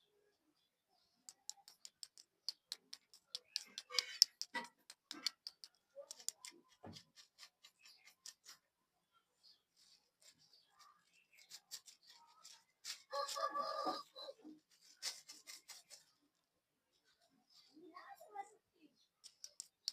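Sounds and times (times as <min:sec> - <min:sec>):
taps and clicks on packaging: 0:01.3 - 0:06.6, 0:19.2 - 0:19.9.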